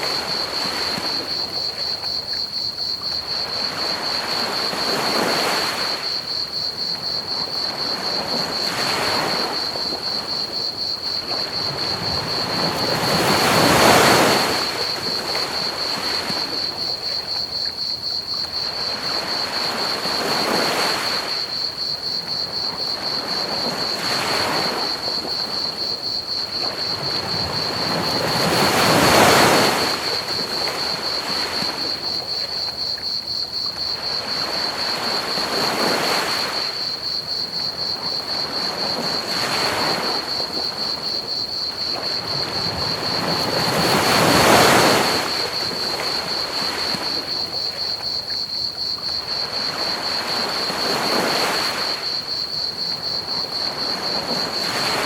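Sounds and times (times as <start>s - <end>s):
high-pitched cricket chorus: 0.0s - 55.0s
ocean waves breaking on beach: 3.1s - 17.6s, 18.6s - 32.7s, 33.5s - 55.0s.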